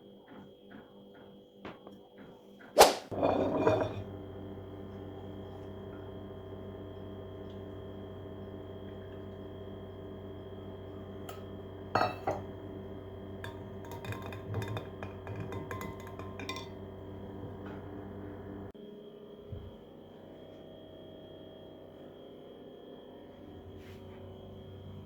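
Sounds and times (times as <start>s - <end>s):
dishes clattering: 3.1s - 18.7s
steady hum: 3.1s - 18.8s.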